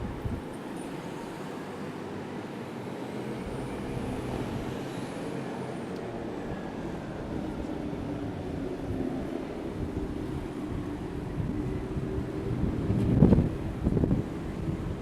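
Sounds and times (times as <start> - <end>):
traffic rumble: 3.2 - 15.0.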